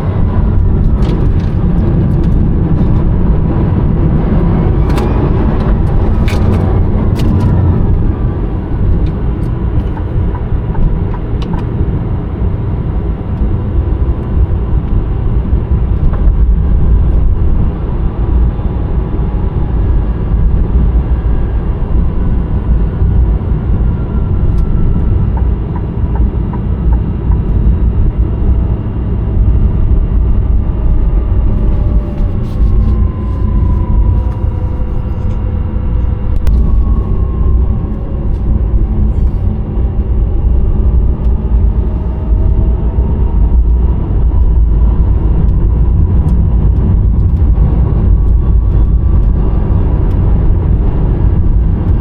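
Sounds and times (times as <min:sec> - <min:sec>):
road and tyre rumble in car cabin: 0:00.0 - 0:52.0
electric motor whine: 0:16.4 - 0:52.0.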